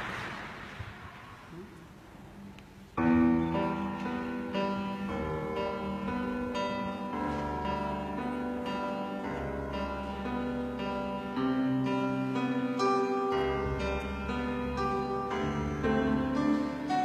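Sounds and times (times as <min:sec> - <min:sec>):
piano music: 0:03.0 - 0:17.0.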